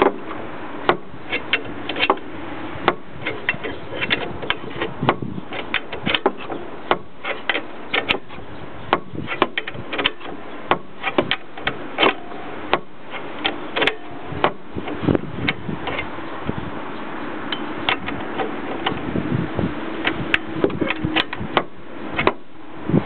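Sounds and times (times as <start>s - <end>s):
metallic clicks and knocks of hand tools: 2.9s - 14.6s.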